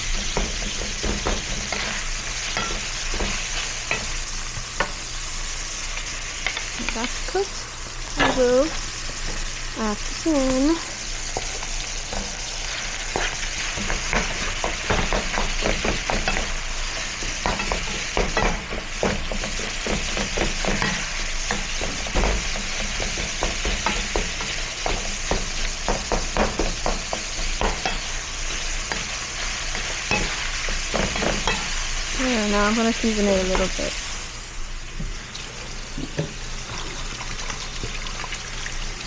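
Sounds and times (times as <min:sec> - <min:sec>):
utensil scraping a pan: 0:00.0 - 0:04.4
meat sizzling in a frying pan: 0:00.0 - 0:39.0.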